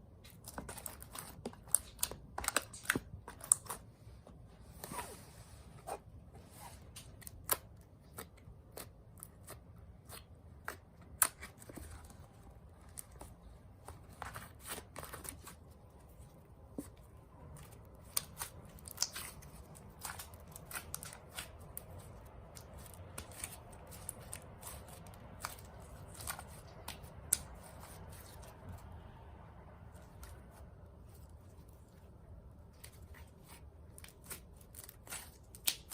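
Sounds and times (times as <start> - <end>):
slime snapping: 18.0 - 19.4, 34.2 - 35.9.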